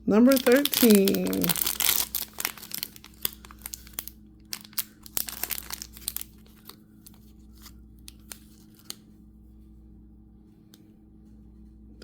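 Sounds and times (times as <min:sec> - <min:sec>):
plastic packaging crinkling: 0:00.0 - 0:09.0.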